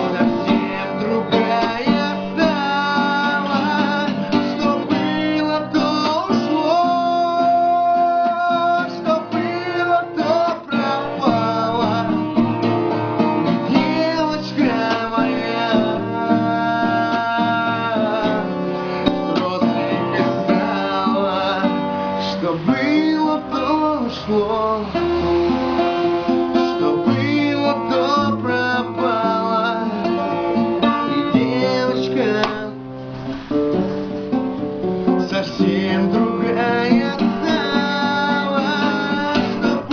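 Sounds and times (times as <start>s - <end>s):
person singing: 0.0s - 12.5s, 13.4s - 32.9s, 35.2s - 39.9s
strummed acoustic guitar: 0.0s - 39.9s.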